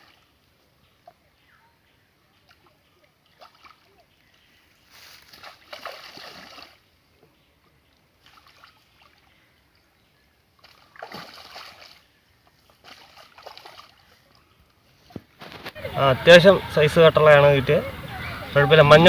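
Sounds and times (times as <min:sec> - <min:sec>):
fish thrashing water splashing: 0:05.3 - 0:06.8, 0:10.6 - 0:12.1, 0:12.8 - 0:14.0.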